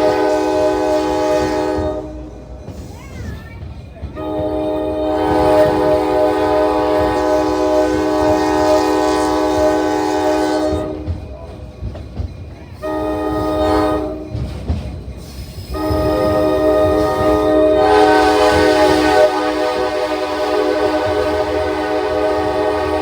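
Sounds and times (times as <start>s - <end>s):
locomotive air horn: 0.0s - 2.4s, 4.2s - 11.2s, 12.8s - 14.4s, 15.7s - 23.0s
train cars rumbling on rails: 0.0s - 23.0s.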